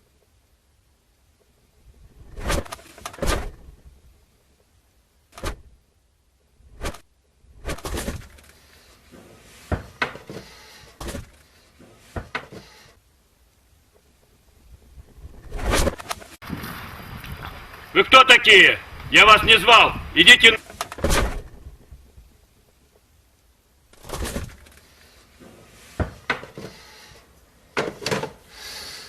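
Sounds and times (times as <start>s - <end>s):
knocks thumps and clatters: 9.1s - 12.7s, 24.0s - 24.8s, 25.4s - 26.8s, 27.8s - 28.4s.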